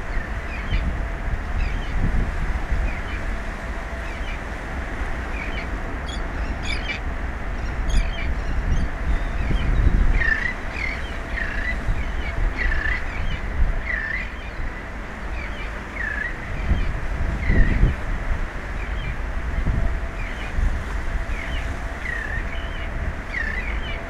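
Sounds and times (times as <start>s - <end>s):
wind rumble on microphone: 0.0s - 24.0s
birds calling: 2.8s - 18.0s, 21.3s - 24.0s.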